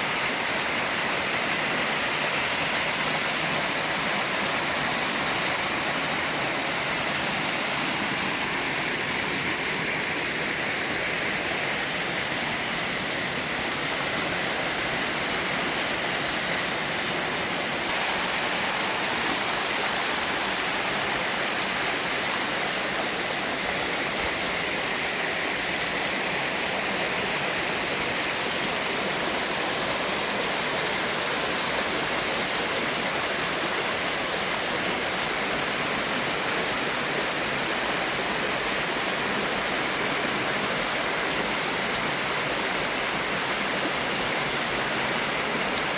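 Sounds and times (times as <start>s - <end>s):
waterfall rushing: 0.0s - 45.9s.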